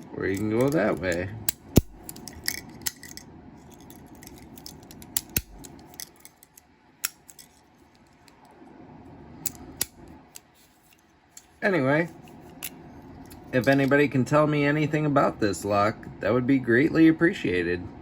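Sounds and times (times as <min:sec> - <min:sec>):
padlock metallic clicks: 0:04.2 - 0:07.4.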